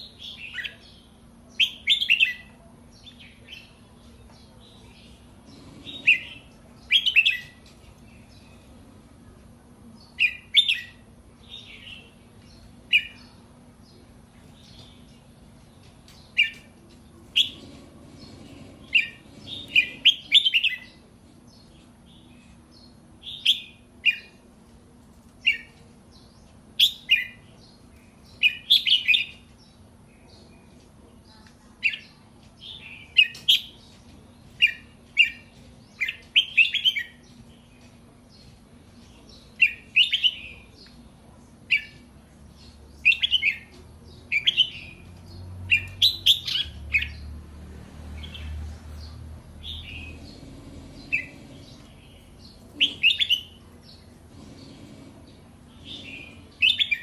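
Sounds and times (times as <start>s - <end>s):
bird chirping and whistling: 5.9s - 7.6s, 45.7s - 47.2s, 52.8s - 53.6s, 56.0s - 57.0s.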